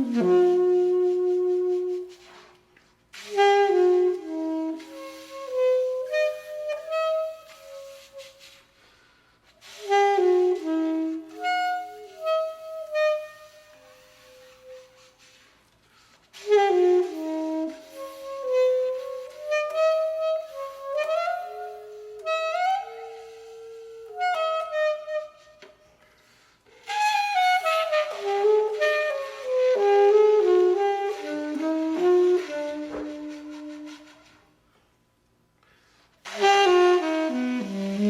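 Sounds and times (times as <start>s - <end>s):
slow saxophone melody: 0.0s - 38.0s.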